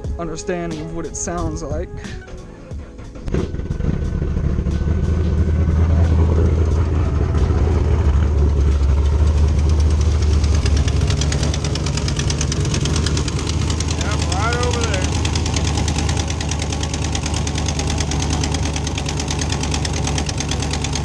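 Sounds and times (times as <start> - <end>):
car engine idling: 1.6 - 21.0
fast even ticking: 8.8 - 21.0.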